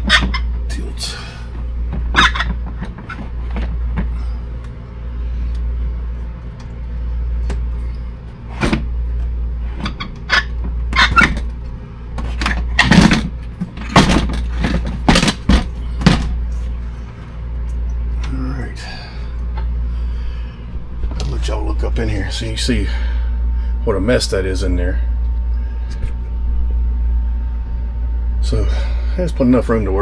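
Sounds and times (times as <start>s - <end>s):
steady low hum: 0.0s - 30.0s
coffee maker knocking and clattering: 7.5s - 9.0s, 9.6s - 16.8s.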